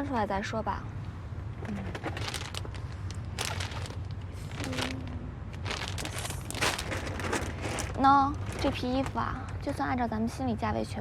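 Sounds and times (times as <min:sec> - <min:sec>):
low steady hum: 0:00.0 - 0:11.0
rustling: 0:01.7 - 0:09.4
low voice-like hum: 0:04.4 - 0:05.6.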